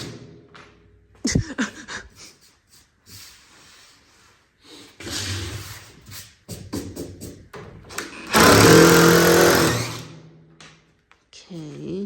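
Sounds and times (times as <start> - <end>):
sharp knocks and rattles: 7.0 - 10.0
power drill driving a screw: 8.0 - 10.1.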